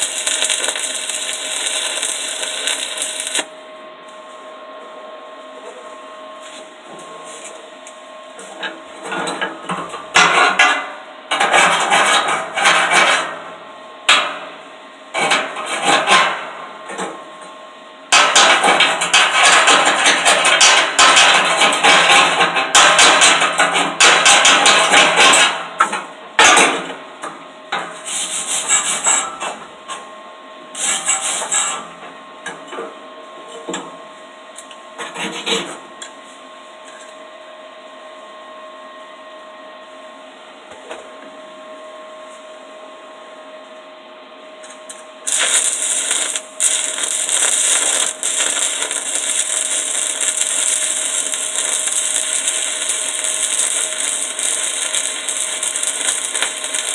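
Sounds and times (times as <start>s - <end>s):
welding arc crackling hiss: 0.0s - 3.5s, 18.2s - 25.6s, 30.8s - 31.7s, 45.2s - 56.9s.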